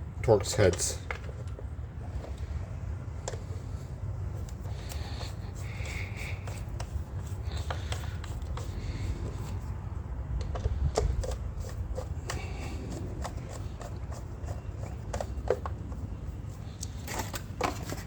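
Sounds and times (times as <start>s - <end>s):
steady low rumble: 1.0s - 17.0s.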